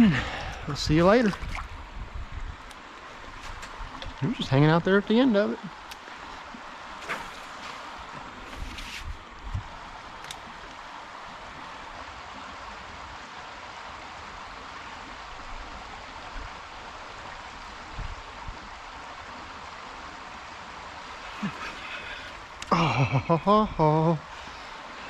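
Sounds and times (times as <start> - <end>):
creek water rushing: 0.0 - 25.0.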